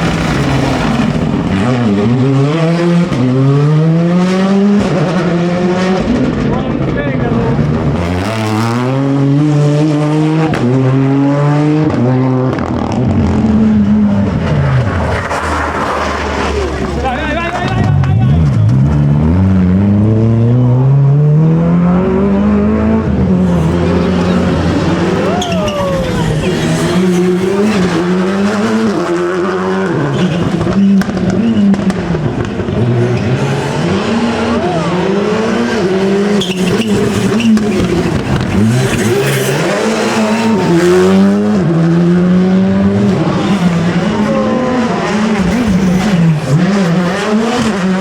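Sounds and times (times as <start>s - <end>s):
rally car engine at high revs: 0.0s - 48.0s
engine cracks and pops: 30.2s - 32.8s, 36.4s - 39.5s.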